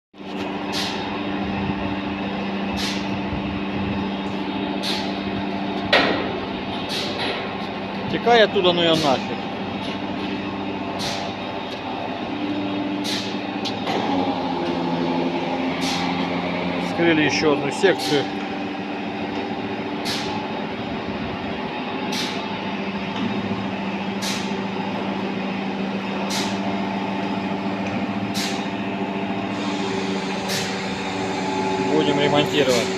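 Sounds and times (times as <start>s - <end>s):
factory machinery humming: 0.2s - 32.9s.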